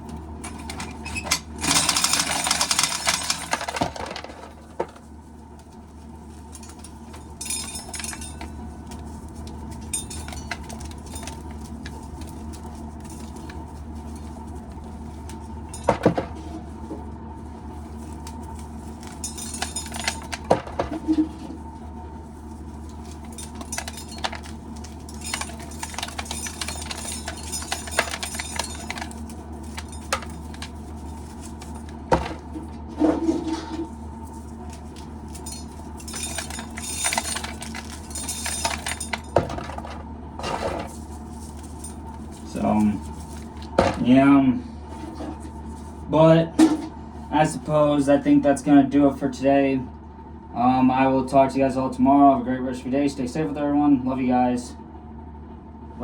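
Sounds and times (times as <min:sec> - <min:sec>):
steady low hum: 0:00.0 - 0:56.0
corn kernels clinking: 0:23.1 - 0:32.4.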